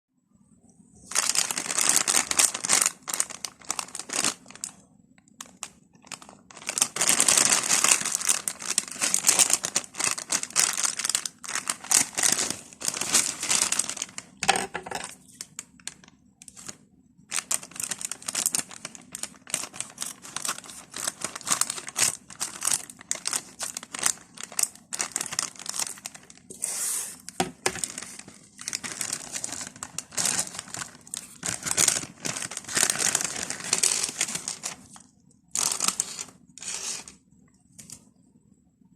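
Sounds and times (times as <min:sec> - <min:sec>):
plastic wrapper crinkling and tearing: 0:01.0 - 0:26.5, 0:27.2 - 0:38.1.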